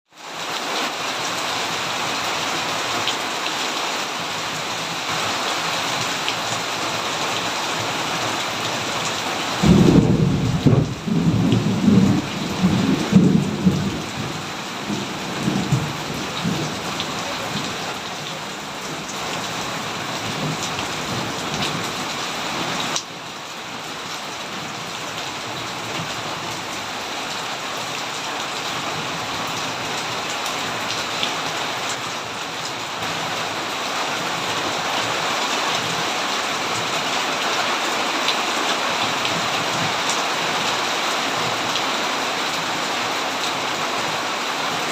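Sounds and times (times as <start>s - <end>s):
steady rain falling: 0.1s - 44.9s
rolling thunder: 9.6s - 17.8s.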